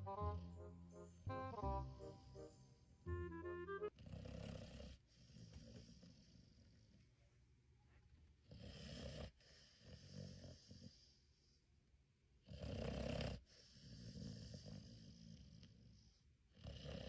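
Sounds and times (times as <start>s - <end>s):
dog snoring: 4.0s - 7.0s, 8.4s - 11.6s, 12.4s - 17.0s
dog breathing softly: 9.0s - 11.7s.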